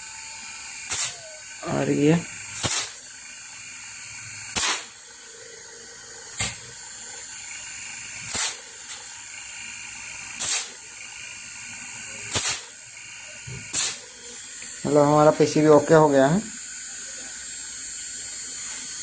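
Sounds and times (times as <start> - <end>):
fan motor running: 0.0 - 19.0
sharp click: 4.6 - 4.9, 8.3 - 9.0, 10.4 - 10.7, 12.3 - 12.6, 13.7 - 14.0.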